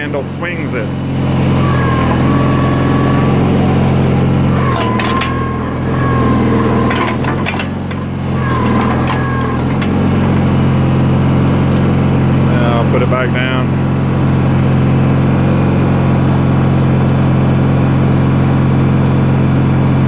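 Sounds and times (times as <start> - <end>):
backhoe engine running: 0.0 - 20.0
hydraulic whine: 0.0 - 20.0
metal clanks: 1.6 - 12.1.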